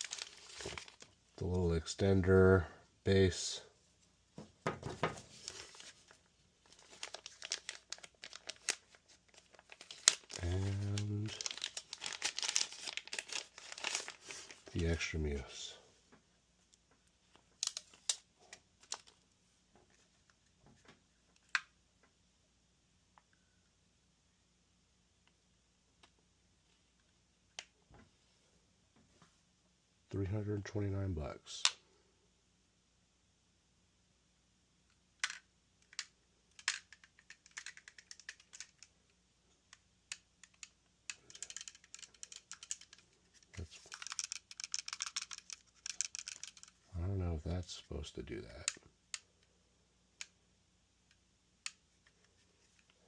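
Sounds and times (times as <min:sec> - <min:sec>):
packaging crinkling: 0:00.0 - 0:01.2, 0:05.2 - 0:14.8, 0:40.5 - 0:46.9
plastic parts clicking: 0:17.6 - 0:18.2, 0:35.2 - 0:38.9, 0:39.7 - 0:46.8.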